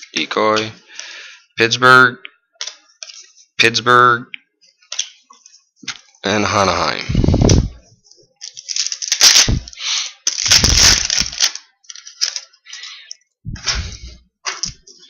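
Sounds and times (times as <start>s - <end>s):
cards being handled: 2.6s - 3.5s, 7.4s - 15.0s
foil wrapper crinkling and tearing: 8.4s - 13.2s.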